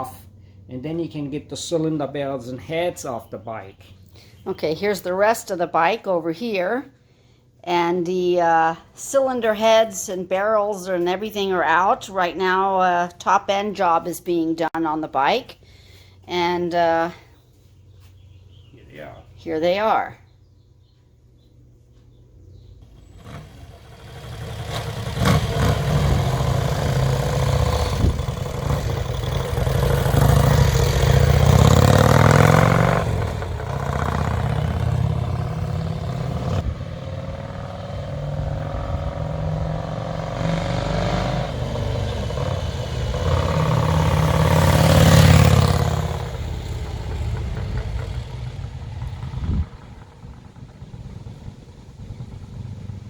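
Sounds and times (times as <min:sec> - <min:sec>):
motorcycle engine revving and idling: 0:22.8 - 0:53.0.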